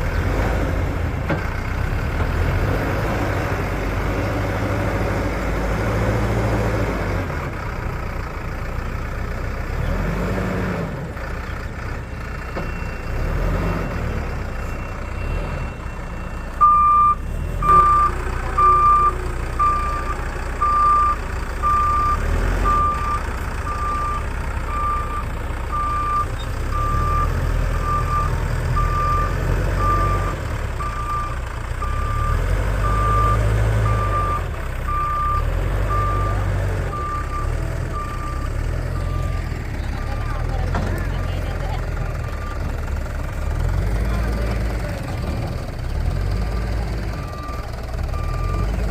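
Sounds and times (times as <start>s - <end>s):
diesel engine revving: 0.0s - 48.9s
reversing alarm beeping: 12.4s - 43.1s, 46.3s - 48.9s.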